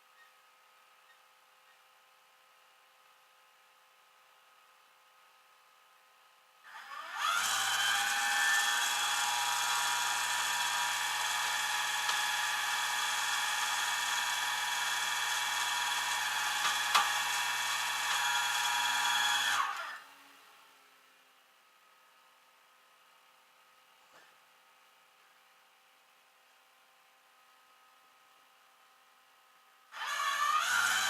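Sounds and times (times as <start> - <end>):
small electric motor whining: 6.7 - 20.1, 29.9 - 31.0.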